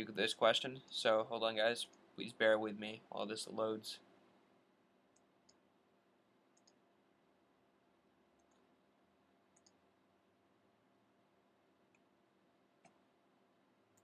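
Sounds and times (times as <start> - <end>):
faint short clicks: 9.6 - 9.8.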